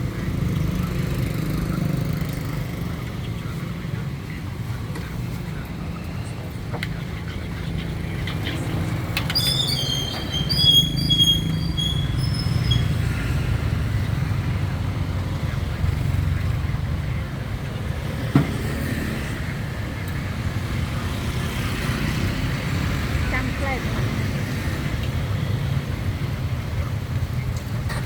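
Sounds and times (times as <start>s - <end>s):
high-pitched squeaks: 8.6s - 13.1s.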